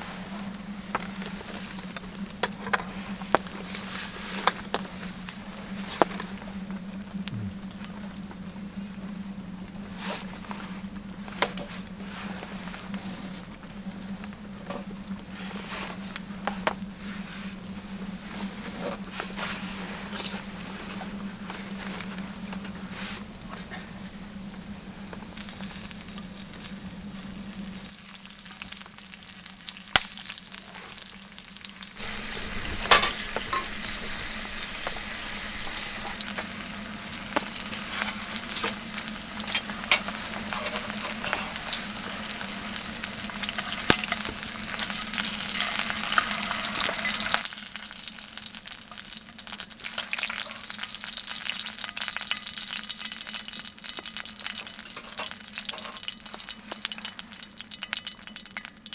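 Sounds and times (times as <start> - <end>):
meat sizzling on a grill: 25.3 - 58.9
steady low hum: 32.0 - 46.2.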